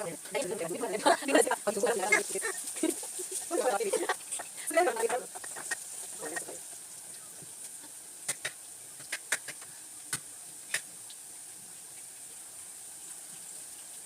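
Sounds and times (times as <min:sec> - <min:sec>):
onions sizzling in oil: 0:00.0 - 0:14.0
sharp clicks: 0:08.3 - 0:10.9.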